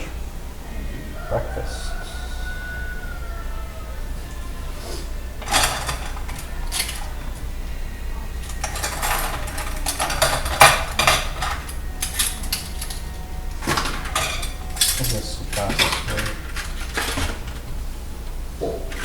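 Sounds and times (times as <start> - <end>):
dishes and cutlery clinking: 4.4 - 7.6, 8.3 - 17.8, 18.6 - 19.0.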